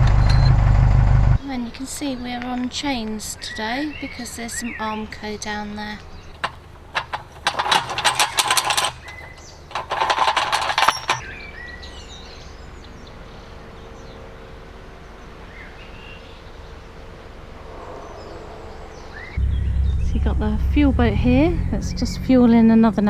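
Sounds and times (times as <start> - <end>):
boat engine idling hum: 0.0 - 23.0
metal chains rattling against steel: 2.0 - 11.4.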